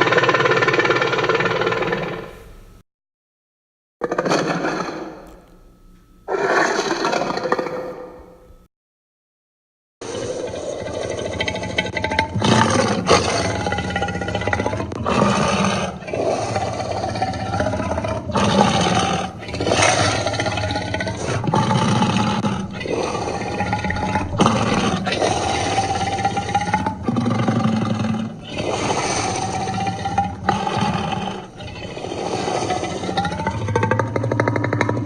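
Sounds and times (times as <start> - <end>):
dragon roars and snarls: 10.0 - 35.0.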